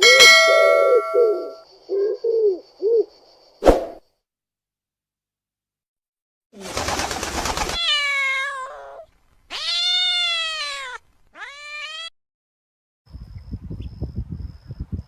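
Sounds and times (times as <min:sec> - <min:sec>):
cat meowing: 0:07.8 - 0:12.1.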